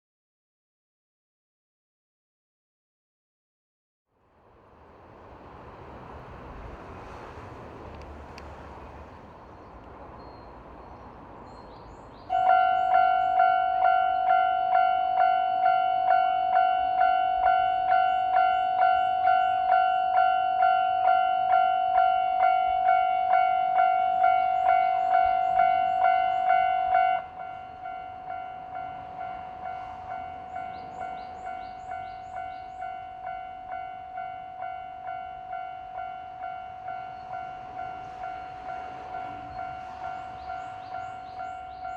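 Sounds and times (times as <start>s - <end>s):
level-crossing alarm bell: 12.3s - 41.9s.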